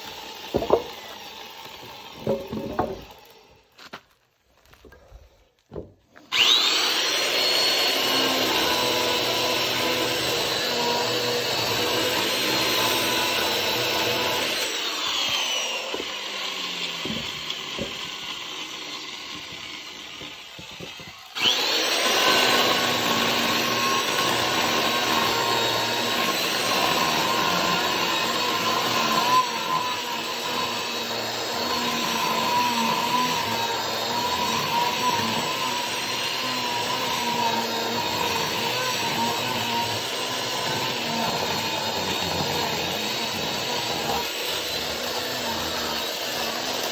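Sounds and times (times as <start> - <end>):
electric chainsaw cutting wood: 0.0 - 3.8, 6.2 - 46.9.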